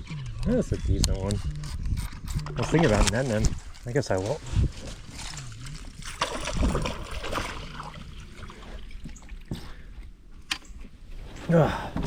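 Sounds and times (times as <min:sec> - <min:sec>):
water splashing and trickling: 0:02.6 - 0:10.1.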